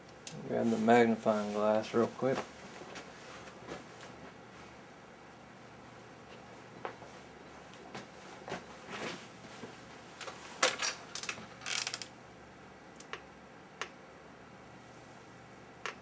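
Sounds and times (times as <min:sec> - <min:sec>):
rustling clicks: 0:10.2 - 0:12.1
small objects clicking and knocking: 0:10.6 - 0:12.1.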